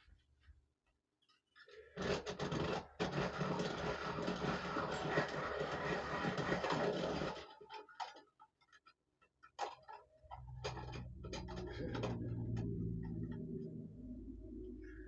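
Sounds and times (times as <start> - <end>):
electric pencil sharpener grinding: 2.0 - 7.5.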